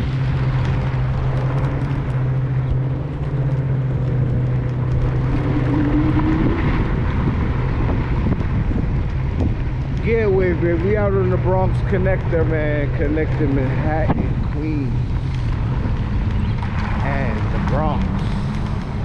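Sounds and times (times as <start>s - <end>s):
wind rushing over microphone: 0.0s - 19.0s.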